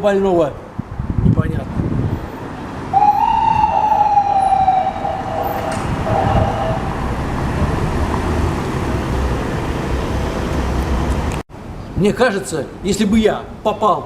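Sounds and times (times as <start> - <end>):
street traffic: 0.0 - 13.8
ambulance siren wailing: 2.9 - 7.7.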